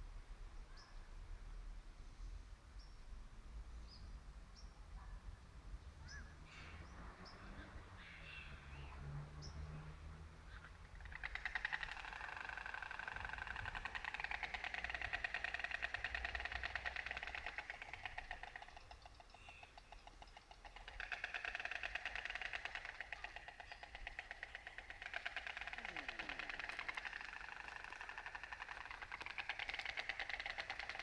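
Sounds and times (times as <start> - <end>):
storks clattering bills: 11.0 - 31.0.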